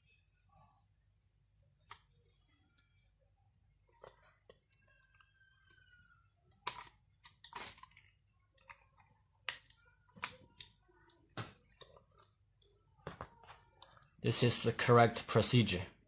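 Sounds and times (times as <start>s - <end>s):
rustling of parts: 6.6s - 12.4s.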